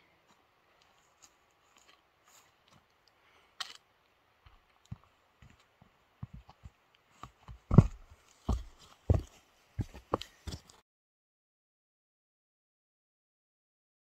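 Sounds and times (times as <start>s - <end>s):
footsteps on forest trail: 0.2s - 2.9s, 4.4s - 10.8s.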